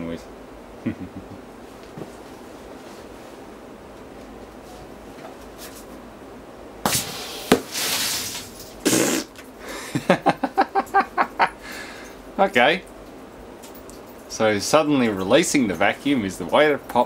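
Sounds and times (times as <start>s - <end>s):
air hissing: 6.9s - 9.4s.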